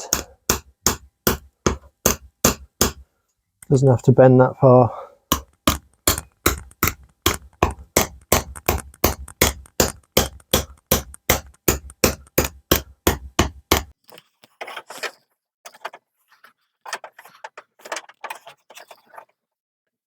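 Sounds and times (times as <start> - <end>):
hammer tapping steel panel: 5.3 - 14.0.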